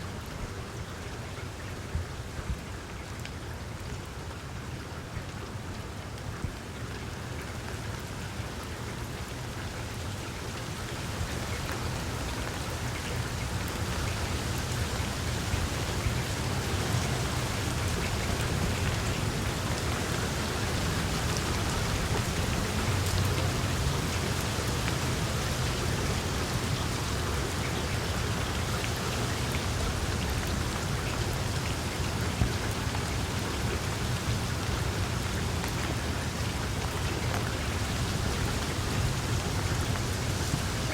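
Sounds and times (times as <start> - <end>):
rain falling on leaves: 0.0 - 40.9.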